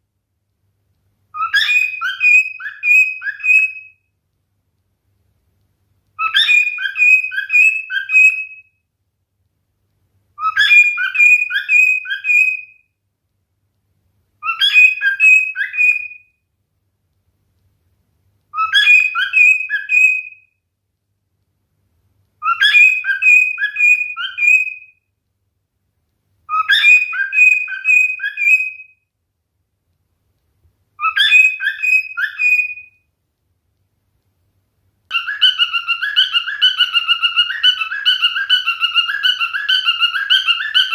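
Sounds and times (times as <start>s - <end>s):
cockatiel whistling song phrase: 1.4s - 4.0s, 6.2s - 8.7s, 10.4s - 12.8s, 14.4s - 16.3s, 18.5s - 20.5s, 22.4s - 25.0s, 26.5s - 29.0s, 31.0s - 33.0s, 35.1s - 40.9s.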